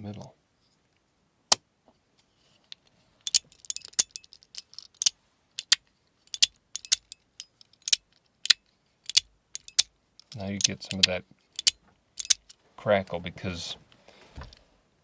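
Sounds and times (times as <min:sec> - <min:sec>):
fidget slider snapping clicks: 0:10.6 - 0:12.4.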